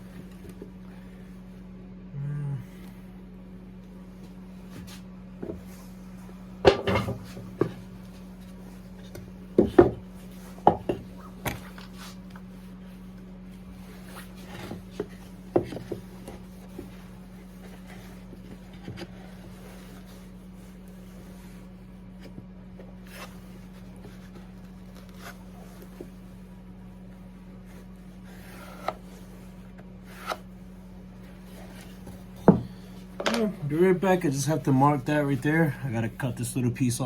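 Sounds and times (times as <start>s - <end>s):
steady low hum: 0.0s - 37.0s
wooden parts knocking on workbench: 6.6s - 7.8s, 9.6s - 10.0s, 32.4s - 33.5s.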